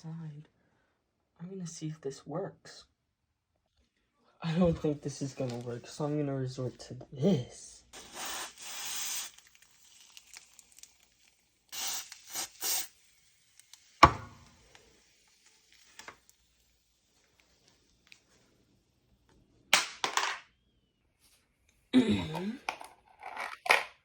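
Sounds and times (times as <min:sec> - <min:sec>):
sharp knock: 0:14.0 - 0:14.5.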